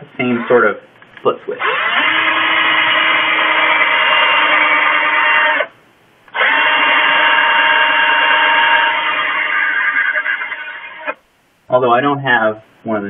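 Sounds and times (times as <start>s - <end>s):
electric drill boring plastic: 1.6s - 5.7s, 6.3s - 11.2s.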